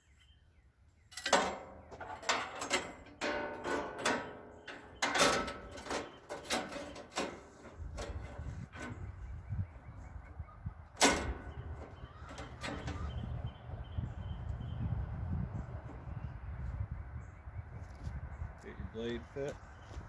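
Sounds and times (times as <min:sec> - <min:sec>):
metal parts clanking and rattling: 0:01.1 - 0:09.1, 0:11.0 - 0:13.3.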